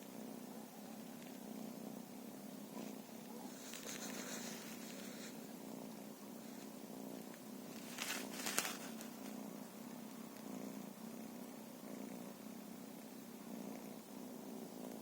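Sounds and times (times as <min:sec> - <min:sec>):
cat purring: 0:00.0 - 0:15.0
rustling: 0:02.7 - 0:11.4.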